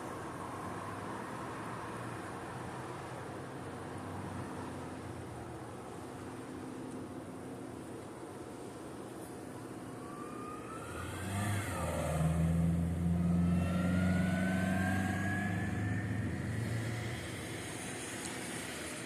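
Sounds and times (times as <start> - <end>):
whine climbing in pitch: 9.8 - 19.0
car accelerating: 10.0 - 19.0.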